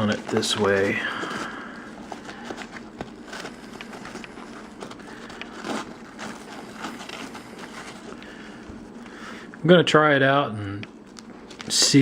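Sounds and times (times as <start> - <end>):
fabric and webbing rustling: 0.0 - 9.0.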